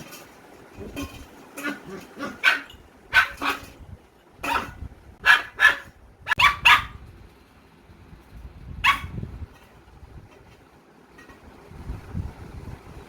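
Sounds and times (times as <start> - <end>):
puppy barking: 1.6 - 3.7, 4.4 - 7.0, 8.8 - 9.2.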